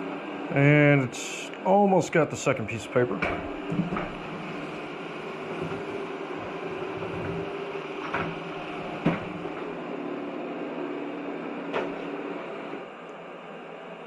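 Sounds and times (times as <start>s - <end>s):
robot vacuum running: 0.6s - 13.2s
knocks: 3.2s - 9.7s.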